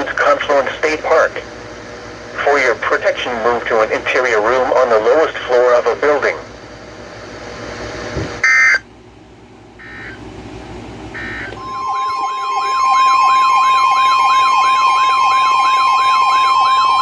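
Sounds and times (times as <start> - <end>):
alert tone with siren sweep: 8.4 - 8.8, 9.8 - 10.2, 11.2 - 17.0.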